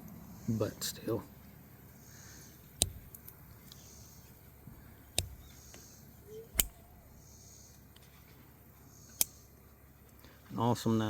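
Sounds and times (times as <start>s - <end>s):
soft high hiss: 0.0s - 11.0s
pocket knife clicks: 2.6s - 7.3s, 9.1s - 9.4s.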